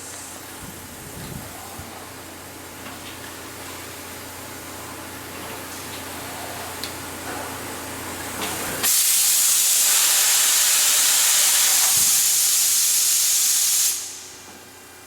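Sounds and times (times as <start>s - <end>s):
loud hiss of air: 0.0s - 1.2s, 8.8s - 14.5s.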